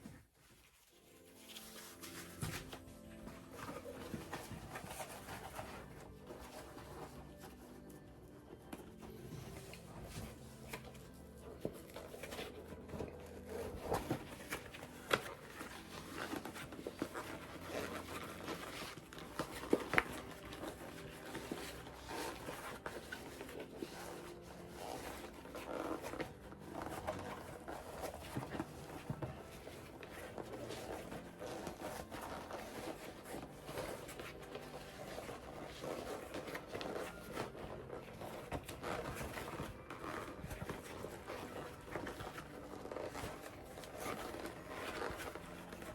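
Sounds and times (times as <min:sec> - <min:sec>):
leather squeaking and creaking: 0:00.0 - 0:45.9
leather snapping: 0:13.5 - 0:28.7.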